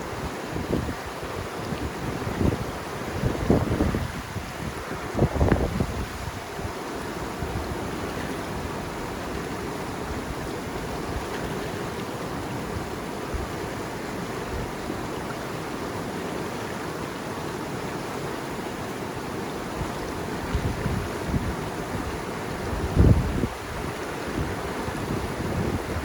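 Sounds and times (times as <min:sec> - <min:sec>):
water rushing: 0:00.0 - 0:26.0.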